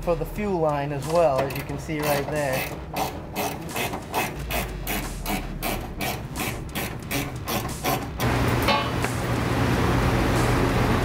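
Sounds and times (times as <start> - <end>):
ratchet wrench cranking: 1.0 - 8.2
steady hum with low drone: 8.2 - 11.0.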